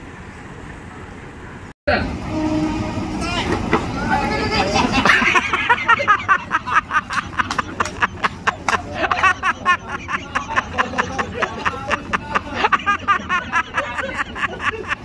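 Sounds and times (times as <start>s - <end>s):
people chattering and laughing: 3.4s - 15.0s.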